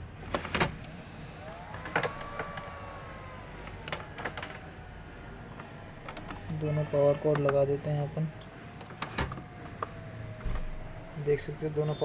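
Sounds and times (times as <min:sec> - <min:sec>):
faint whine: 0:00.0 - 0:12.0
power cords plugging in clicks: 0:05.6 - 0:06.5.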